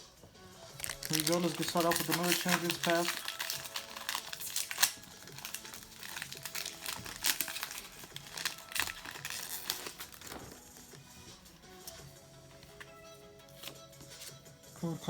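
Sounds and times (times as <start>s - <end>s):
faint background music: 0.0s - 15.0s
foil wrapper crinkling and tearing: 0.7s - 10.8s.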